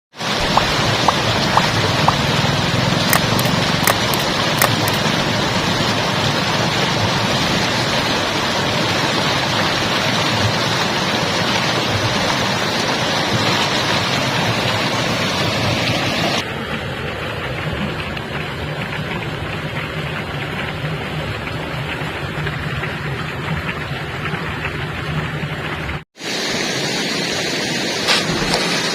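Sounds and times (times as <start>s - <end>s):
running water rushing: 0.2s - 28.9s
marbles clicking: 3.1s - 5.0s.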